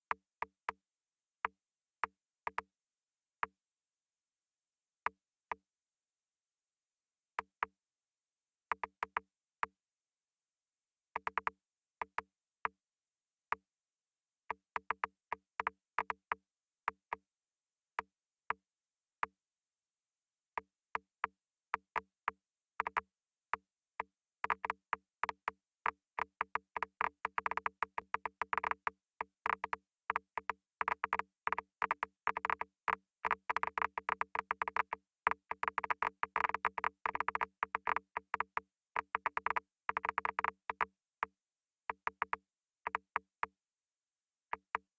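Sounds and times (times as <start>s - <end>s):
geiger counter clicking: 11.2s - 12.2s, 24.4s - 25.6s, 26.2s - 40.9s, 41.9s - 43.5s.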